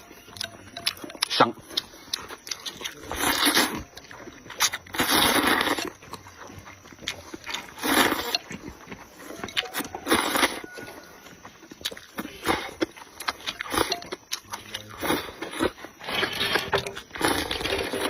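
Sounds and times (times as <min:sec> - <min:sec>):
wet chewing and slurping: 0:00.0 - 0:18.0.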